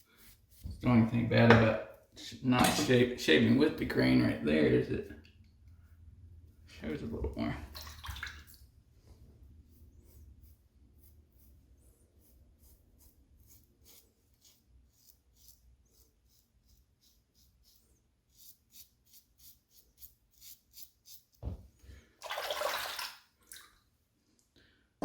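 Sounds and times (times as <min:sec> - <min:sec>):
razor scraping through stubble: 0:09.6 - 0:21.4.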